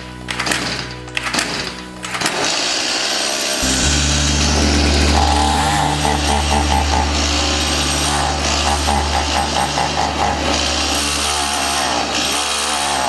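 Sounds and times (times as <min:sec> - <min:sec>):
chainsaw engine starting and running: 0:03.6 - 0:13.0.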